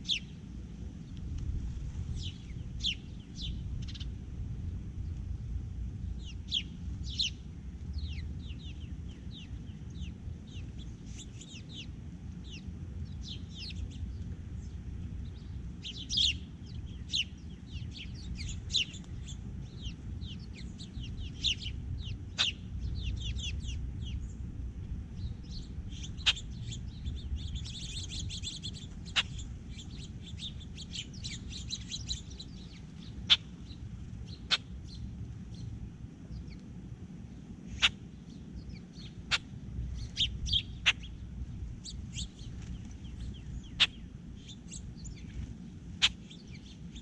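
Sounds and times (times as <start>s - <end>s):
small birds chirping: 0.0s - 47.0s
steady low rumble: 0.0s - 47.0s.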